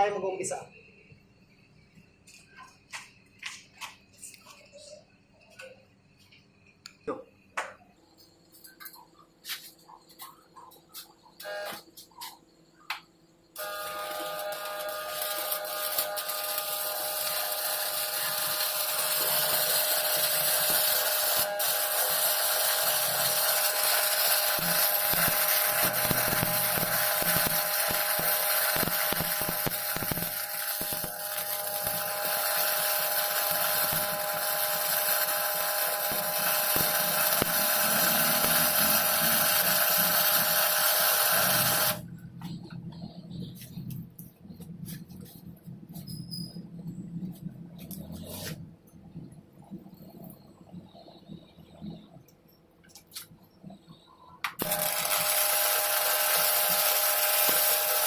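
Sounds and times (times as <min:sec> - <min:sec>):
welding arc crackling: 0:13.6 - 0:42.1, 0:54.5 - 0:58.0.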